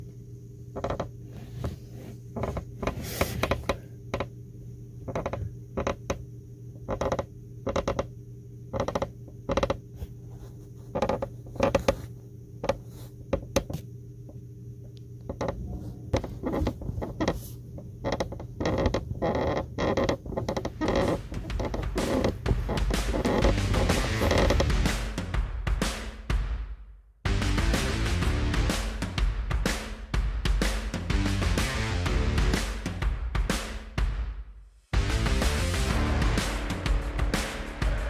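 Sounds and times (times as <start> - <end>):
steady low hum: 0.0 - 25.7, 34.9 - 38.0
car seat creaking: 15.3 - 17.4, 18.1 - 24.7.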